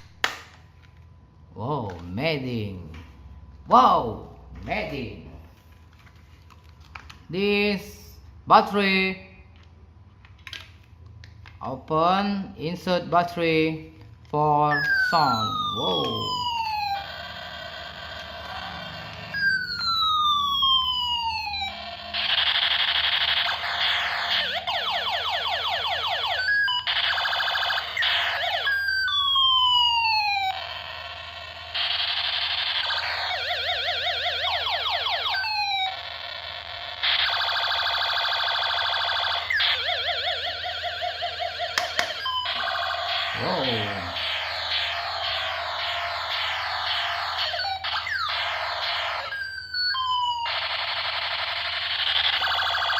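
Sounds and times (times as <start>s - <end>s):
toy gun falling laser tones: 14.7s - 52.9s
toy gun siren-like warbling: 14.7s - 52.9s.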